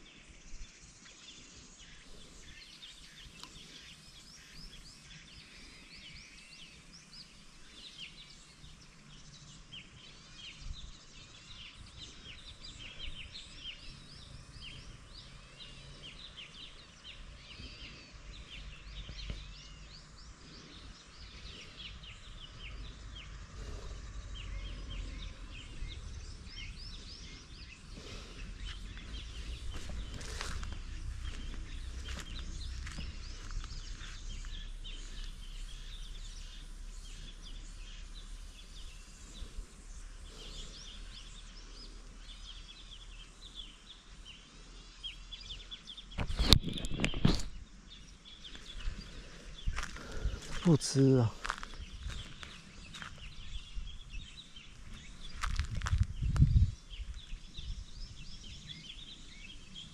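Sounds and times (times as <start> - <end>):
birds chirping: 0.0 - 59.9
low wind rumble: 17.7 - 42.8, 46.2 - 50.7, 51.4 - 59.9.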